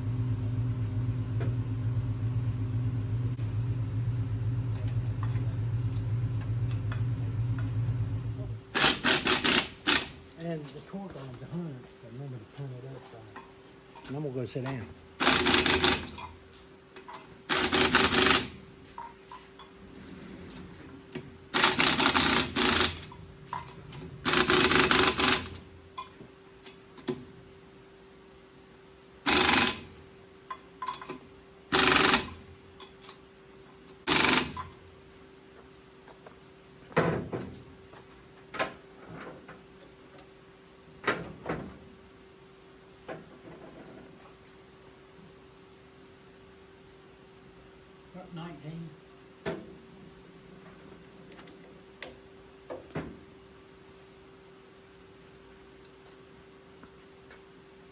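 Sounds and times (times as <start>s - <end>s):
impact wrench rattling: 8.8s - 10.2s, 15.2s - 16.3s, 21.6s - 25.7s, 31.7s - 32.4s, 34.1s - 34.8s.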